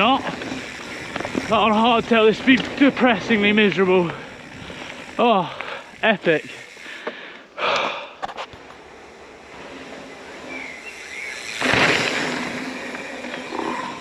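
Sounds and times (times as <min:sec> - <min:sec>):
bike rattling knocks: 0:00.0 - 0:05.8, 0:11.4 - 0:13.5.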